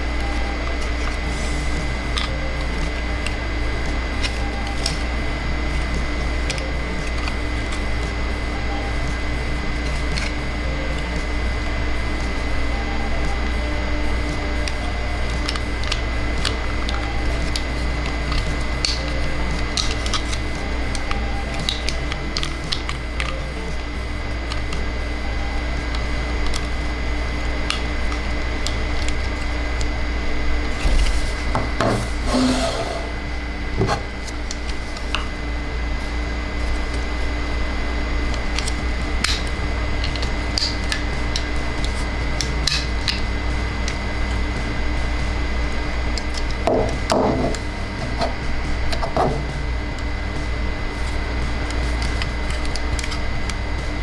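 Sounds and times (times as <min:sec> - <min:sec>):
steady low hum: 0:00.0 - 0:54.0
plastic pieces rubbing: 0:14.3 - 0:24.8, 0:30.6 - 0:35.2.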